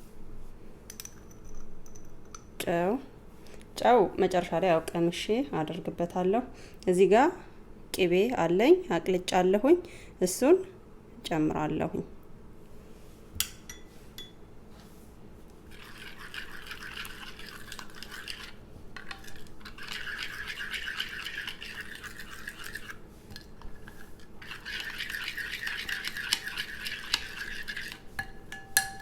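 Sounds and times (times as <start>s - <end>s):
utensil scraping a bowl: 15.6s - 29.0s.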